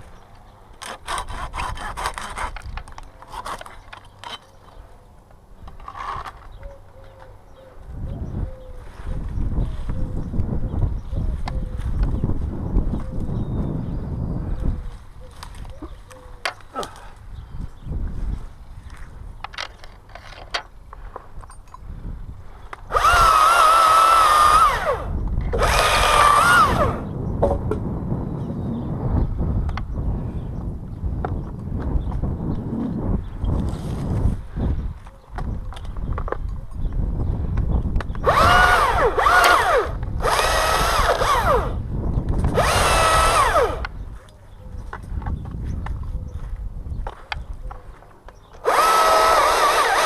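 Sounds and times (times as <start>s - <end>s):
chainsaw revving: 22.9s - 27.1s, 38.2s - 41.8s, 42.5s - 43.9s, 48.6s - 50.0s.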